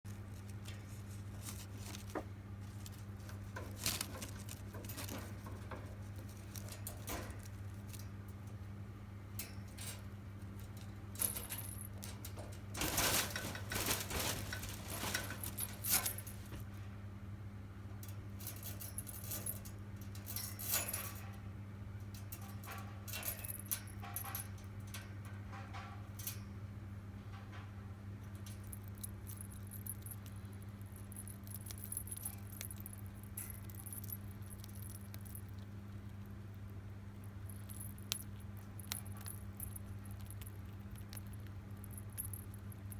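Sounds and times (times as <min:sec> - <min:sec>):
low electrical hum: 0:00.0 - 0:42.9
small animal clicking in cage: 0:00.2 - 0:08.7, 0:28.3 - 0:36.4.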